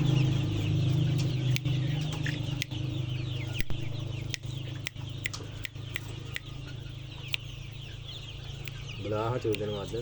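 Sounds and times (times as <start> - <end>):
chicks peeping: 0.0 - 10.0
sharp clicks: 1.2 - 2.9, 3.6 - 6.6, 8.6 - 8.8, 9.4 - 9.8.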